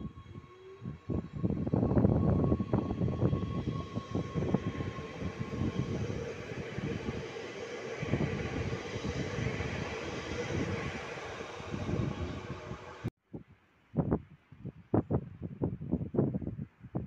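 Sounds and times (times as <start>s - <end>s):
train rolling rumble: 0.0s - 13.1s.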